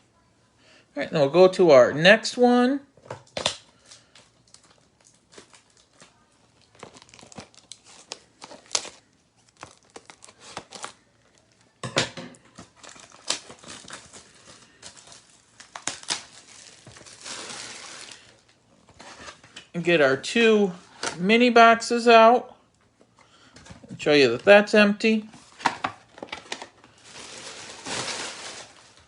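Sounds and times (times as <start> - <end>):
plastic wrapping crinkling: 3.2 - 11.8, 12.4 - 19.6, 25.3 - 29.0
plastic wrapping ripping: 3.3 - 11.7, 12.6 - 18.6, 25.5 - 29.0.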